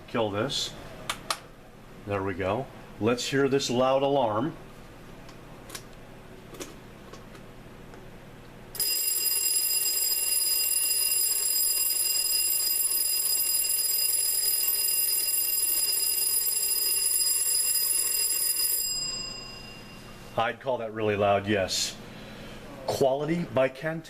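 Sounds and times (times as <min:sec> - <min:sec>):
alarm clock ringing: 0:08.8 - 0:20.4.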